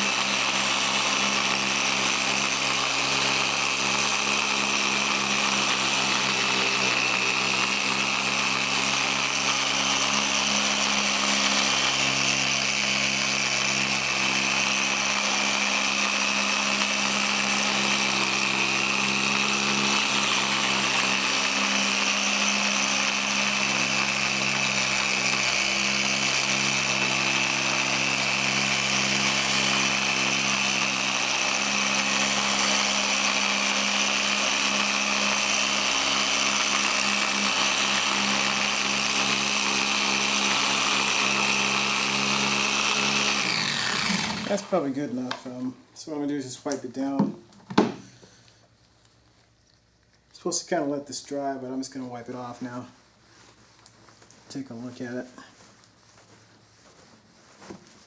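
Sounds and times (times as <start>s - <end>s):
electric polisher motor whine: 0.0s - 44.8s.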